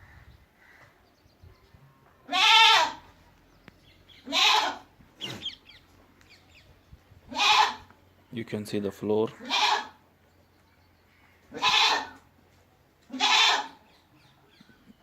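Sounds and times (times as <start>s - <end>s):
goats bleating: 2.3s - 3.0s, 4.3s - 4.8s, 7.3s - 7.8s, 9.4s - 10.0s, 11.5s - 12.2s, 13.1s - 13.8s.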